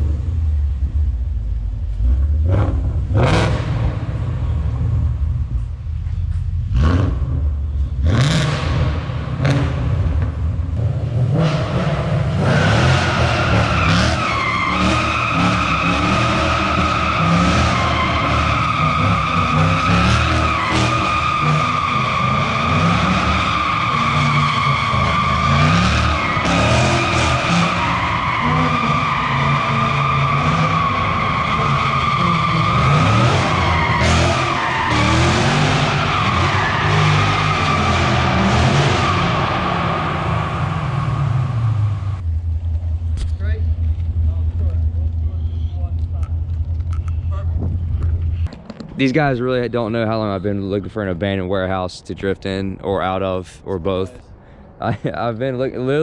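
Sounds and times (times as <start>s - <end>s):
car engine revving: 0.0s - 5.6s, 6.6s - 48.5s
tyres screeching: 12.6s - 41.3s.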